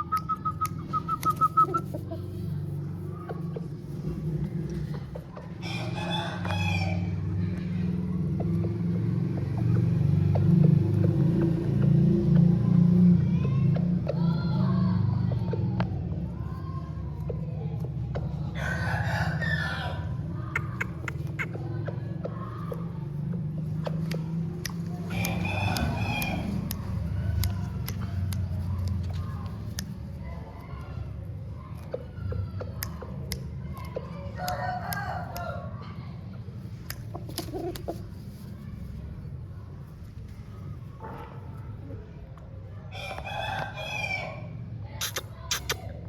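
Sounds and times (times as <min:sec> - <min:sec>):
sharp clicks: 0:00.0 - 0:02.0, 0:23.8 - 0:30.0
steady low rumble: 0:00.0 - 0:42.7
rooster crowing: 0:05.6 - 0:07.1, 0:18.6 - 0:20.1, 0:25.1 - 0:26.6.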